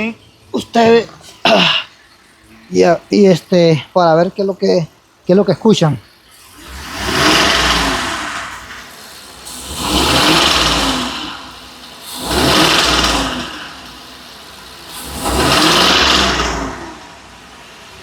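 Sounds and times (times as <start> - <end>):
car engine revving and idling: 6.0 - 18.0.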